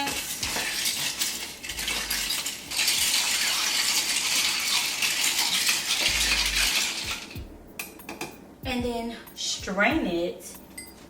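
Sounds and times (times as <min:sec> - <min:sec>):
ice cubes clinking in a glass: 0:00.0 - 0:07.4.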